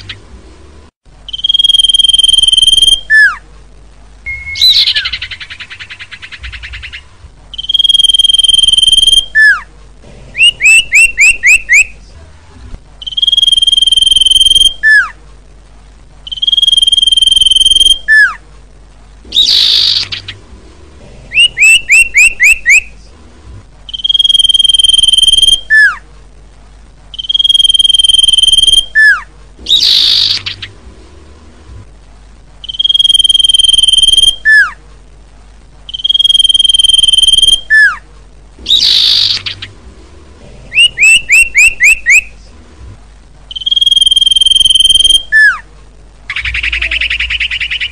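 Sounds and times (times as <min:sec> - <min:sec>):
bird high whistles: 0:01.3 - 0:03.4, 0:04.3 - 0:05.7, 0:07.6 - 0:09.6, 0:10.4 - 0:11.9, 0:13.0 - 0:15.2, 0:16.3 - 0:18.4, 0:21.4 - 0:22.9, 0:23.9 - 0:26.0, 0:27.2 - 0:30.7, 0:32.6 - 0:34.8, 0:35.9 - 0:38.0, 0:38.7 - 0:39.6, 0:40.8 - 0:42.3, 0:43.5 - 0:45.6
short rising bird chirps: 0:01.3 - 0:03.4, 0:04.3 - 0:09.6, 0:16.3 - 0:18.4, 0:23.9 - 0:26.0, 0:27.2 - 0:30.8, 0:32.6 - 0:34.8, 0:35.9 - 0:38.0, 0:38.6 - 0:39.8, 0:40.7 - 0:42.3, 0:43.5 - 0:45.6.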